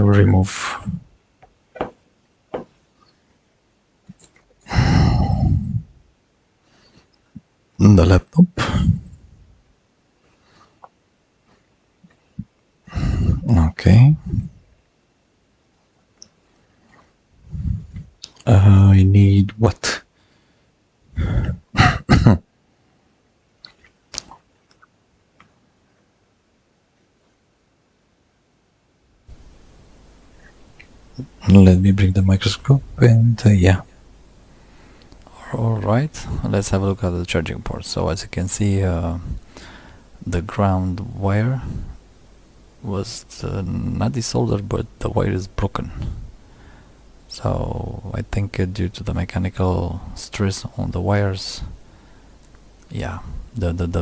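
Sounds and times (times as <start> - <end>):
faint clicks: 29.3 - 31.6, 34.0 - 35.4, 52.2 - 53.0
light clicks: 35.0 - 35.3.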